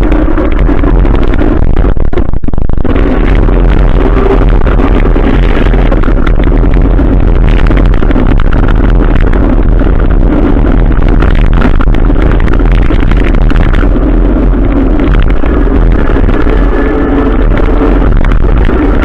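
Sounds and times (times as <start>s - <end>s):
motorcycle engine running: 0.0s - 19.0s
wind and rain on microphone: 0.0s - 19.0s.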